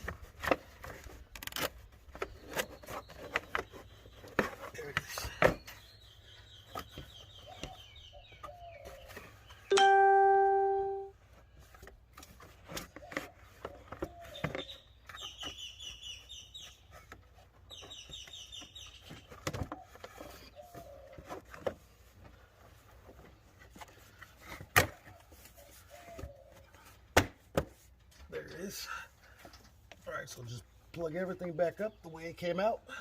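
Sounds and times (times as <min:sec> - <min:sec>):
birds chirping: 0:02.0 - 0:11.1, 0:12.9 - 0:21.4, 0:28.4 - 0:33.0.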